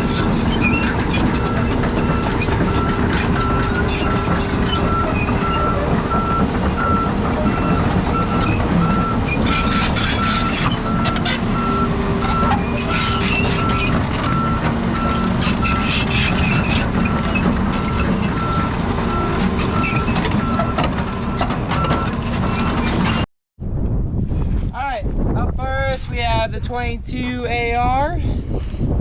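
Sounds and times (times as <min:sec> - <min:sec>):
machine rattles and knocks: 0:00.0 - 0:11.6
excavator travel alarm beeps: 0:00.0 - 0:22.8
diesel engine running: 0:00.0 - 0:23.3.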